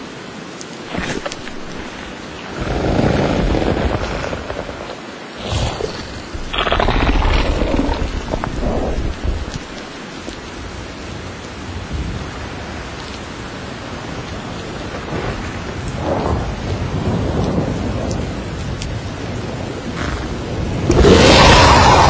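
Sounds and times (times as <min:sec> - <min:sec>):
steady rain: 0:00.0 - 0:22.0
thunder rumble: 0:00.9 - 0:22.0.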